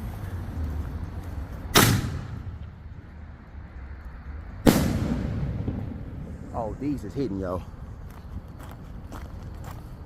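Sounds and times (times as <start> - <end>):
loud firework bang: 1.7 - 2.6, 4.6 - 6.5.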